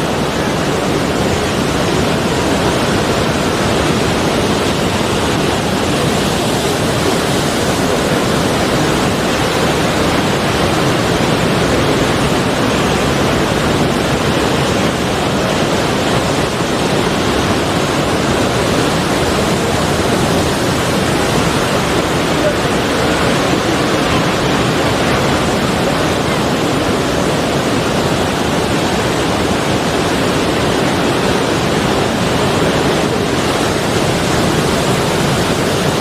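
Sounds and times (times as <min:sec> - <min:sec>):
sea waves roaring: 0:00.0 - 0:36.0.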